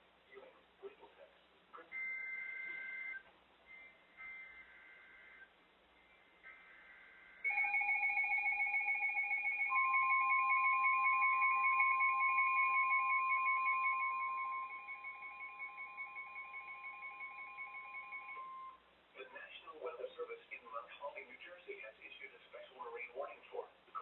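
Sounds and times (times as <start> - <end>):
steady single-pitch warning tone: 1.8 - 18.8
rapidly pulsing two-pitch alarm: 2.0 - 18.8.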